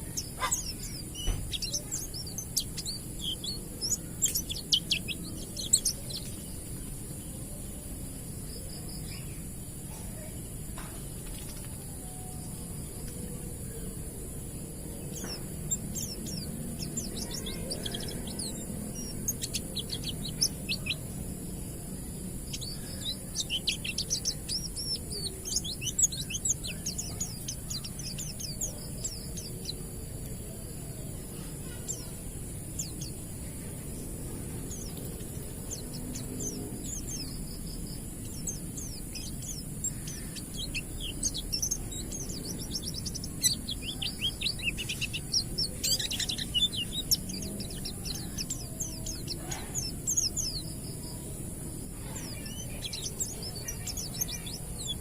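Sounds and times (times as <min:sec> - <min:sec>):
bird singing quick sweeping chirps: 0:00.0 - 0:06.9, 0:15.1 - 0:21.2, 0:21.9 - 0:29.8, 0:34.5 - 0:51.2
steady high hiss: 0:00.0 - 0:55.0.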